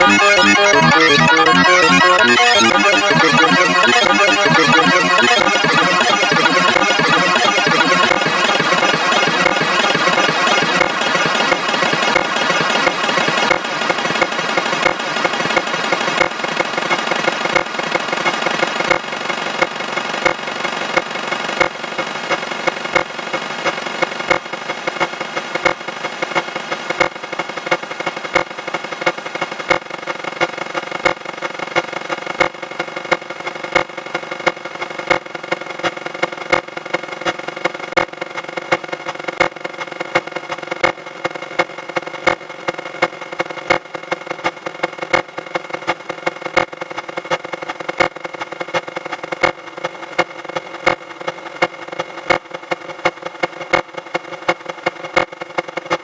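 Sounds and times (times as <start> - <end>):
sped-up alarm buzzing drone: 0.0 - 13.5.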